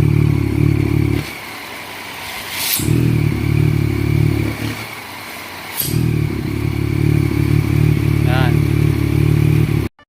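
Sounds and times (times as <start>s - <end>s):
loud motorcycle engine running: 0.0s - 2.0s, 2.7s - 10.0s
sharp click: 5.8s - 6.0s.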